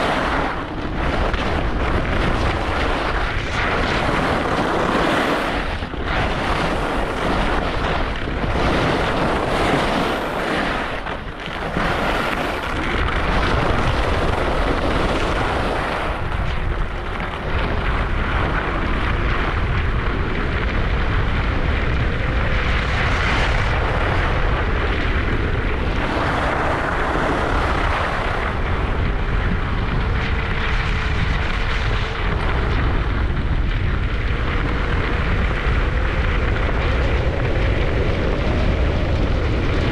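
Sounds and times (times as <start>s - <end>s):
skis scraping over snow: 0.0s - 21.2s
wind rushing over microphone: 0.0s - 39.9s.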